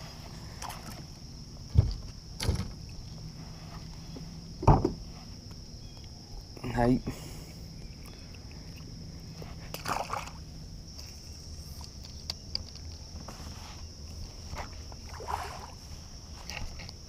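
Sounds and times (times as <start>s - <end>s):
fish splashing: 9.8s - 10.4s, 15.0s - 15.8s.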